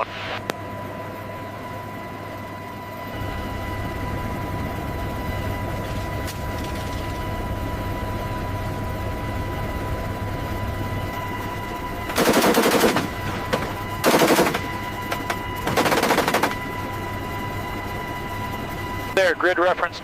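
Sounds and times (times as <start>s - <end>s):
engine drone with whine: 0.0s - 20.0s
rotary gun firing bursts: 12.1s - 16.8s.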